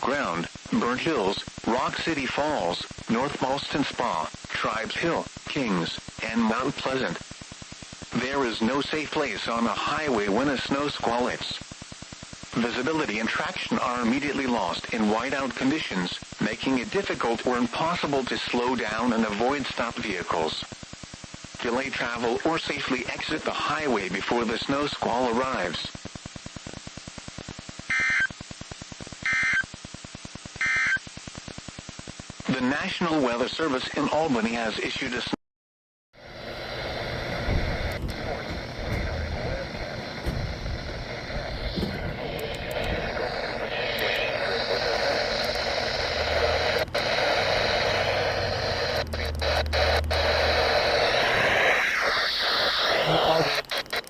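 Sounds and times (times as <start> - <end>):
radio static hiss: 0.0 - 35.4, 36.2 - 54.0
rapid low ticking buzz: 36.2 - 51.7
digital data tone bursts: 41.3 - 54.0.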